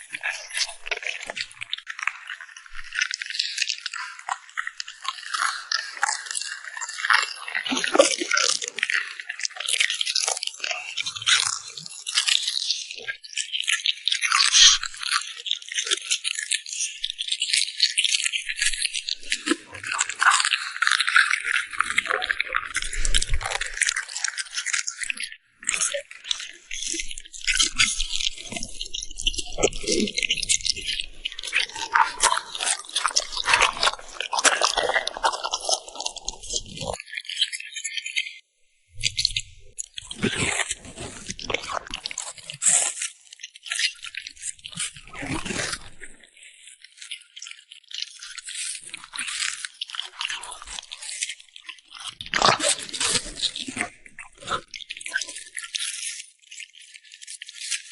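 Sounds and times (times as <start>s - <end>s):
dog chewing and crunching food: 17.4s - 37.8s, 39.0s - 57.8s.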